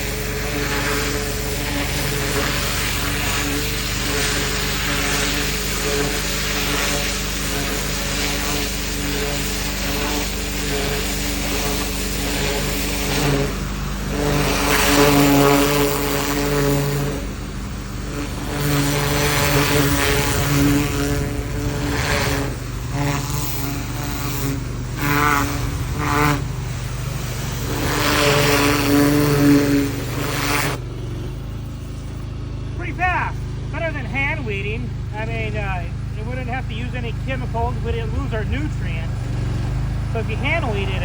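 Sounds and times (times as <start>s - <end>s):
pressure washer spray: 0.0s - 30.8s.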